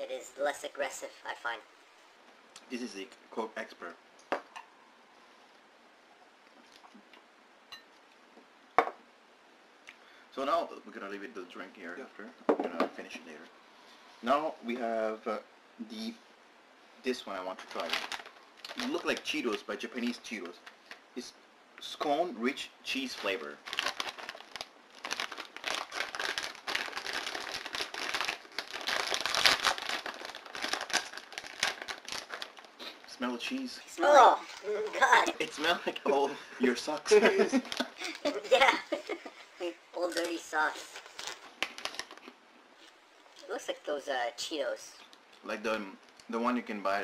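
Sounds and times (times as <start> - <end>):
plastic snack bag crinkling: 17.5 - 21.0, 22.9 - 33.7, 36.9 - 39.2, 40.0 - 43.5.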